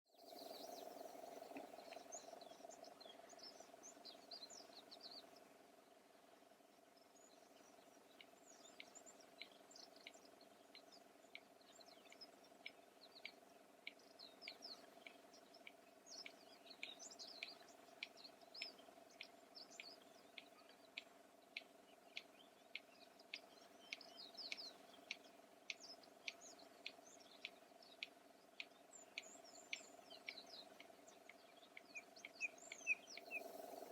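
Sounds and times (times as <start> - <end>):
small birds chirping: 0.1 - 33.9
bird giving sharp clicks: 12.1 - 33.9.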